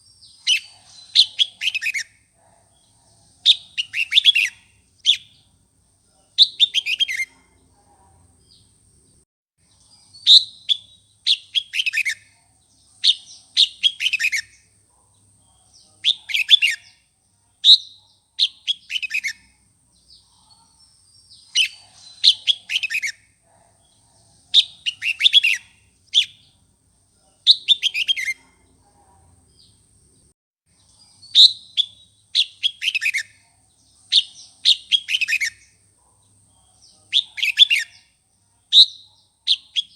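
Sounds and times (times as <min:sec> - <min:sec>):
bulbul singing chirpy phrases: 0:00.2 - 0:05.4, 0:06.3 - 0:07.3, 0:13.0 - 0:14.6, 0:15.5 - 0:17.0, 0:21.3 - 0:23.2, 0:23.8 - 0:26.5, 0:27.4 - 0:28.5, 0:31.1 - 0:35.8, 0:36.6 - 0:38.0, 0:38.7 - 0:39.9.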